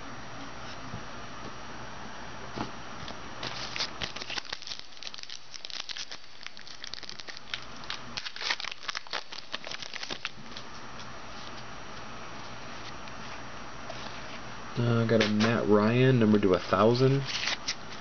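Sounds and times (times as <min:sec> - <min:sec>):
wrapper being torn and crinkled: 0:03.4 - 0:10.6.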